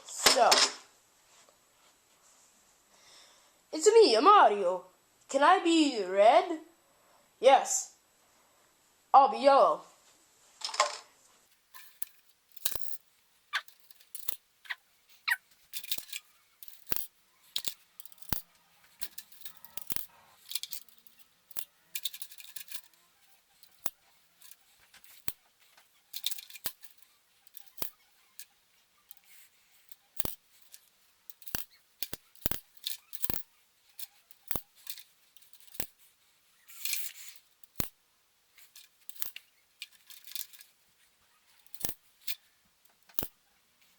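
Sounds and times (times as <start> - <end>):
plastic discs clicking into grid: 11.8 - 13.0, 13.6 - 23.0, 41.7 - 42.0.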